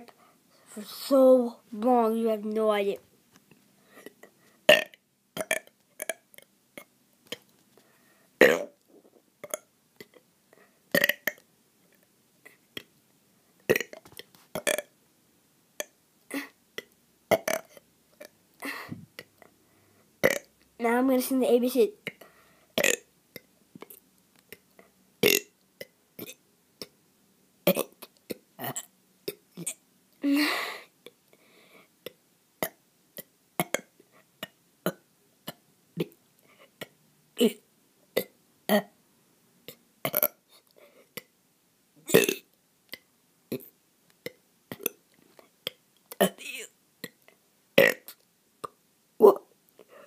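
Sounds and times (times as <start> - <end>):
throat clicks: 4.1 - 7.5, 32.0 - 36.2, 42.1 - 45.0, 47.0 - 48.8
person burping: 4.7 - 6.2, 8.4 - 8.8, 9.4 - 10.2, 10.9 - 11.4, 13.7 - 14.0, 14.6 - 14.9, 17.3 - 19.0, 20.2 - 20.5, 22.8 - 23.1, 25.2 - 25.5, 26.2 - 26.4, 27.6 - 30.6, 33.6 - 36.2, 37.4 - 37.6, 38.2 - 38.9, 40.0 - 40.4, 42.1 - 42.5, 44.3 - 45.0, 46.1 - 47.2, 47.8 - 49.4.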